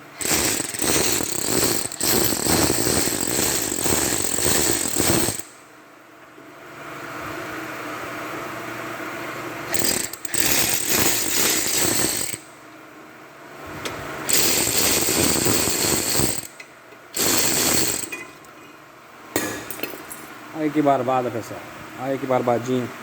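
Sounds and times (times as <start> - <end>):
pneumatic impact wrench rattling: 0.0 - 5.5, 9.7 - 12.5, 14.3 - 18.4.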